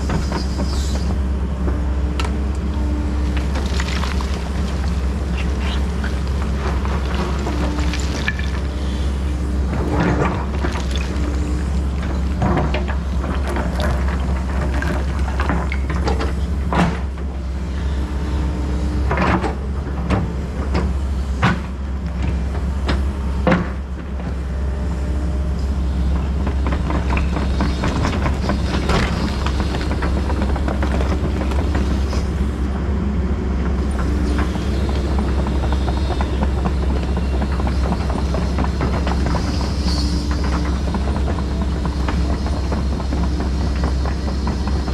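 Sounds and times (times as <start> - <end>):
diesel engine running: 0.0 - 44.9
machine knocking and clanking: 3.3 - 8.8, 9.6 - 17.3, 26.2 - 32.3, 34.0 - 44.9.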